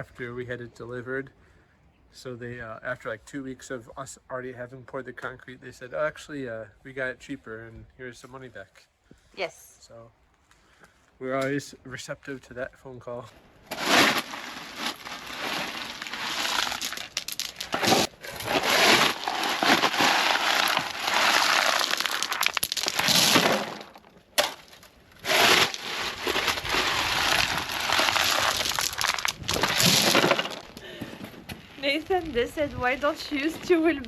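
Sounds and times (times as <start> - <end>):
gravel crunching and scraping: 10.4 - 34.0.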